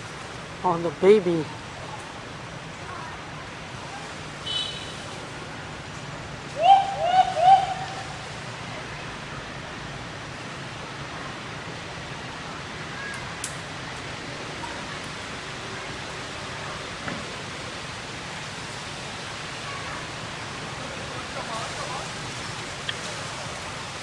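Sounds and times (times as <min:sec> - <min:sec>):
steady background hiss: 0:00.0 - 0:24.0
animal calling with rising notes: 0:06.6 - 0:08.2.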